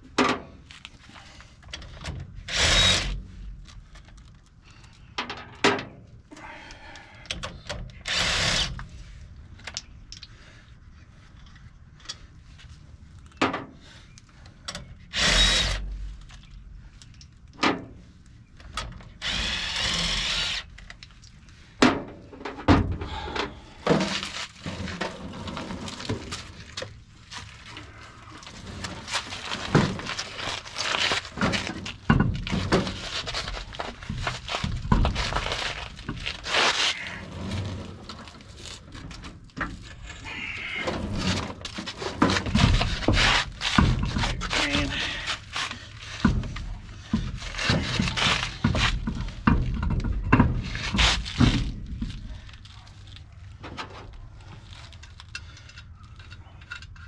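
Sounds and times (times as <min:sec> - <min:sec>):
handheld power tool running: 0:19.2 - 0:20.7.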